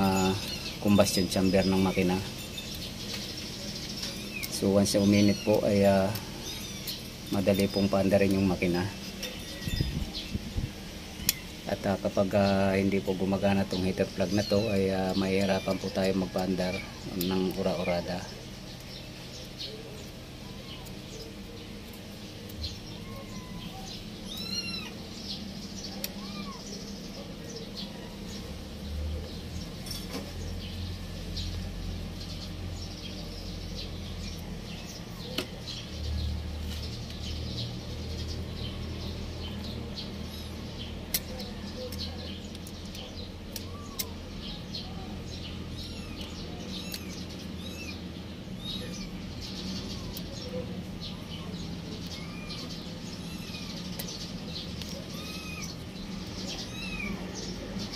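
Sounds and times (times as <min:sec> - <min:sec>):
birds chirping: 0:00.0 - 0:57.9
steady low hum: 0:00.0 - 0:57.9
cat meowing: 0:22.8 - 0:25.0, 0:26.0 - 0:26.8, 0:45.8 - 0:48.0, 0:52.1 - 0:53.8, 0:55.0 - 0:55.8, 0:56.6 - 0:57.3.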